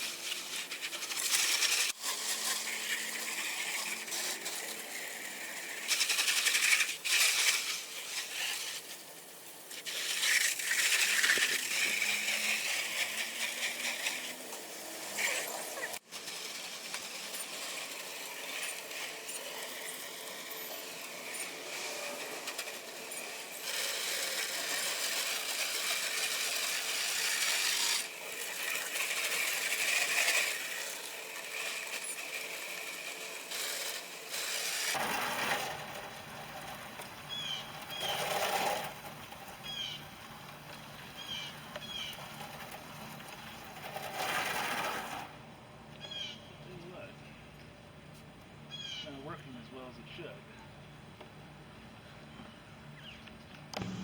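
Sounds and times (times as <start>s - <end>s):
hose spray hissing on wall: 0.0s - 45.3s.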